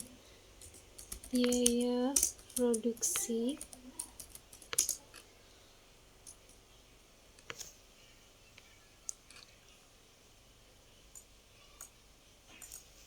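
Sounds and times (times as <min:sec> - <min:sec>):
computer clicks: 0:00.0 - 0:05.2
low background hiss: 0:00.0 - 0:13.0.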